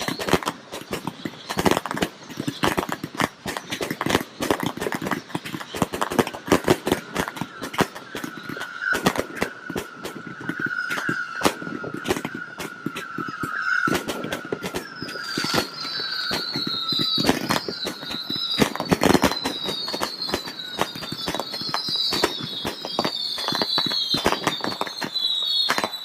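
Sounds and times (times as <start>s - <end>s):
falling firework whistle: 0.0s - 26.0s
fireworks crackling bangs: 0.0s - 26.0s
higher firework whistle: 0.0s - 26.0s.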